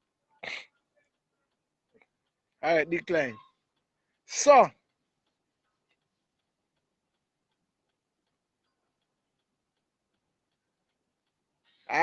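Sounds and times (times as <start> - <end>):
faint ticks: 4.8 - 11.8.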